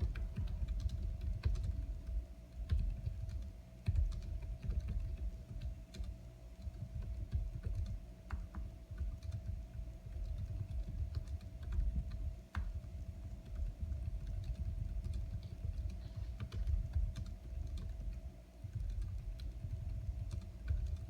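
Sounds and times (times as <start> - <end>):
typing on computer keyboard: 0.0 - 21.0.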